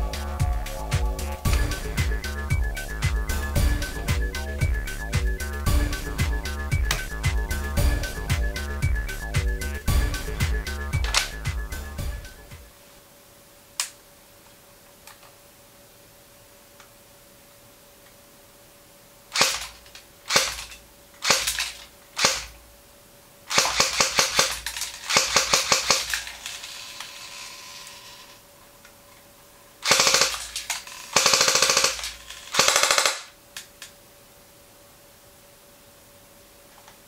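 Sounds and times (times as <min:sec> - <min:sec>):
airsoft pistol shots: 0:19.4 - 0:22.5.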